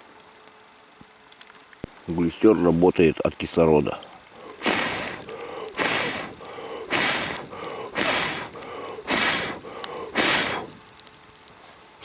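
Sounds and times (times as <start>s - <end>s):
person blowing on fire coals: 4.2s - 11.8s.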